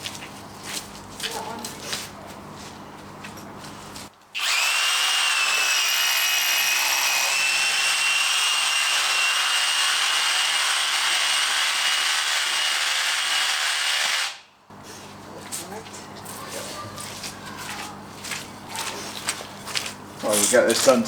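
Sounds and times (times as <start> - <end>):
power drill whining under load: 4.4 - 14.4.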